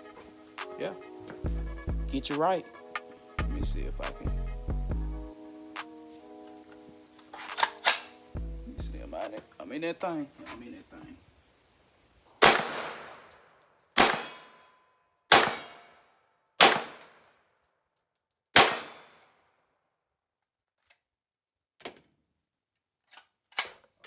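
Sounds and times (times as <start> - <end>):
pistol shots echoing: 12.4 - 13.3, 14.0 - 14.5, 15.3 - 16.0, 16.6 - 17.2, 18.6 - 19.2.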